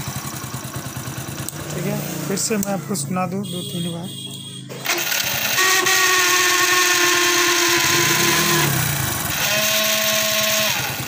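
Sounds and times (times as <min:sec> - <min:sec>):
starter motor grinding: 0:04.7 - 0:11.0.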